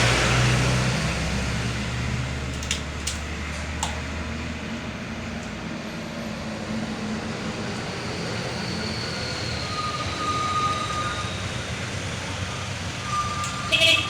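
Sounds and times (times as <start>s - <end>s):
heavy vehicle rumbling past: 0.0s - 14.0s
high squealing tones: 8.6s - 14.0s.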